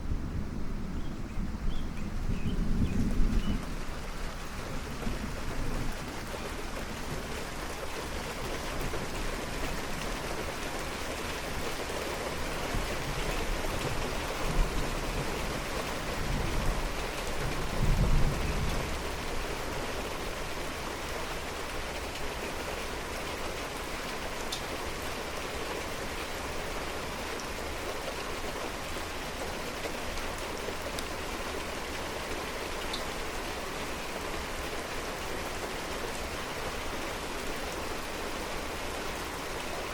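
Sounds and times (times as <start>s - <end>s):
steady rain falling: 0.0s - 39.9s
distant thunder rumbling: 16.2s - 19.3s.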